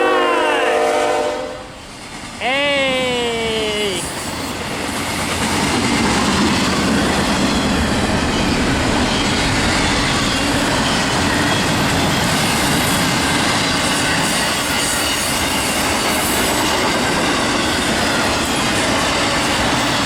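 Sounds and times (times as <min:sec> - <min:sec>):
freight train wheels on rails: 0:00.0 - 0:20.0.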